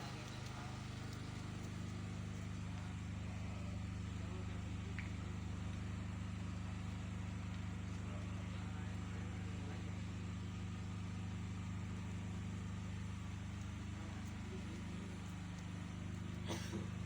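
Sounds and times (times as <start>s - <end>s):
engine droning: 0.0s - 17.0s.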